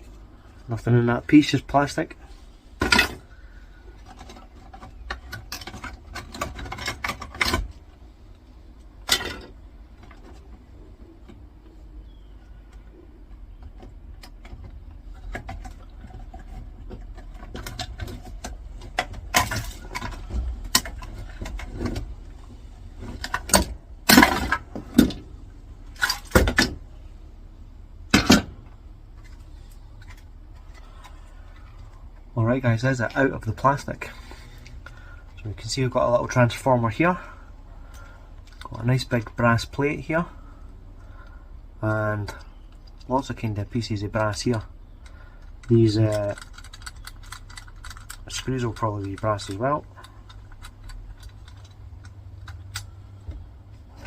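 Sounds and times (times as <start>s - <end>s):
plastic casing cracking: 45.6s - 49.2s.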